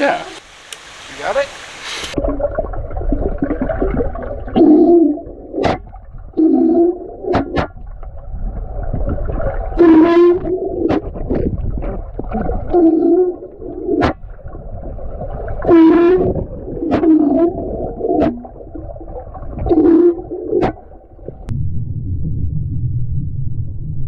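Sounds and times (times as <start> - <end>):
watery rumble: 0.0 - 24.0
underwater firework pops: 0.3 - 2.2.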